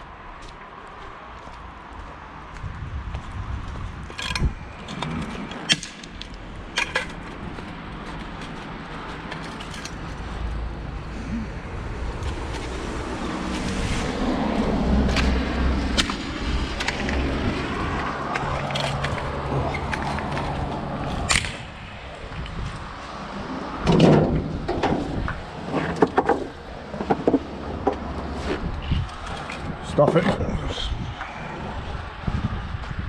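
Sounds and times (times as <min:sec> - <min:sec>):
sharp knocks and clattering: 0:23.8 - 0:28.6.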